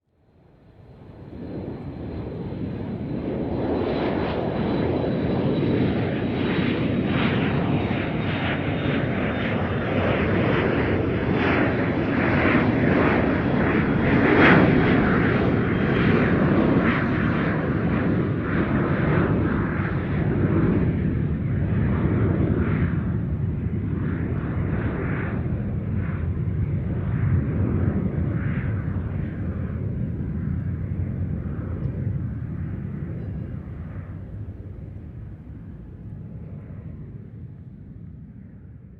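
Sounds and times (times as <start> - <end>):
airplane engine roar: 0.2 - 38.9.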